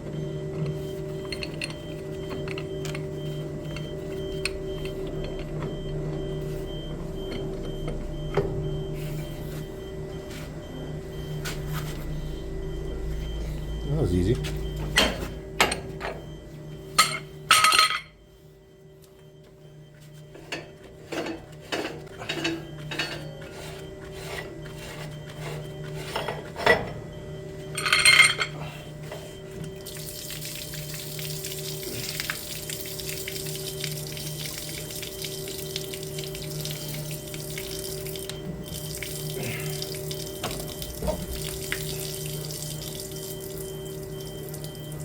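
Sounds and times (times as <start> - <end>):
steady low hum: 0.0 - 45.0
metal tools clinking and clanking: 1.2 - 3.0, 17.0 - 18.1, 20.5 - 23.3, 26.1 - 26.9, 27.8 - 28.6.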